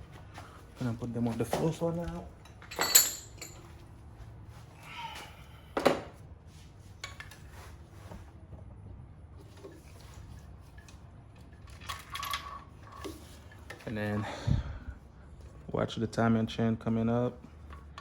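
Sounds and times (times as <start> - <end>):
metal engine parts clinking: 2.4 - 3.8.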